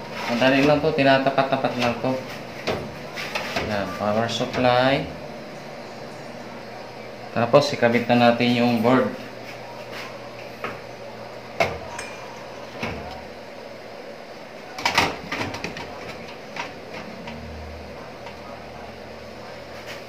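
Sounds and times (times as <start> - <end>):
computer parts knocking and clicking: 14.8 - 16.0.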